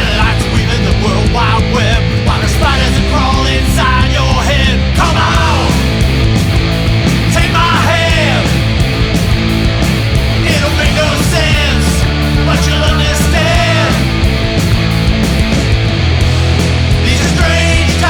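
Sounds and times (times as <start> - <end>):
punk rock song: 0.0 - 18.0
drum hits: 4.6 - 18.0.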